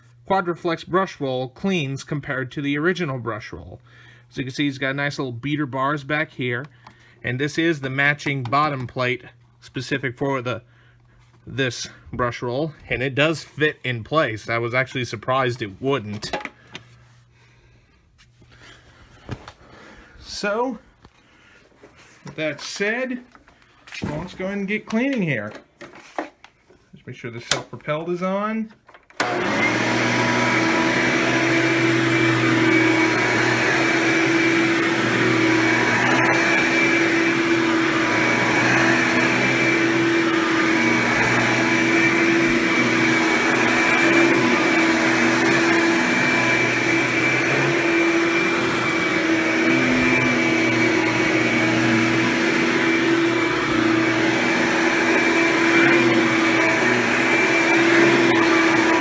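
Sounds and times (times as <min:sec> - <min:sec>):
vacuum cleaner motor whine: 0:29.2 - 0:59.0.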